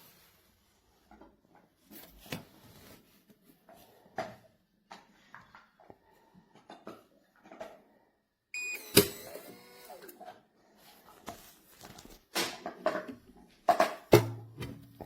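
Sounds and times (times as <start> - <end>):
short electronic beep: 8.6 - 9.0.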